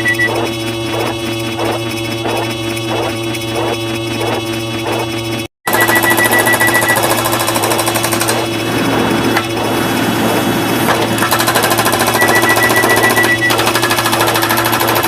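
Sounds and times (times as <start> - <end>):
high beeps: 0.0 - 0.5, 5.7 - 7.1, 12.0 - 13.6.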